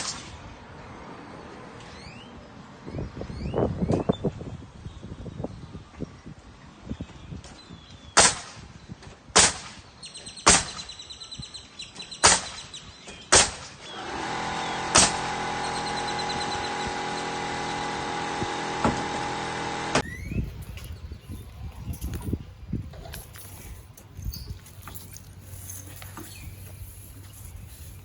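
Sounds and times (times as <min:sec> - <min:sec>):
nail gun shots: 0:08.2 - 0:08.6, 0:09.3 - 0:09.8, 0:10.4 - 0:10.9, 0:12.2 - 0:12.7, 0:13.3 - 0:13.8, 0:14.8 - 0:15.4
air compressor motor running: 0:13.9 - 0:20.3.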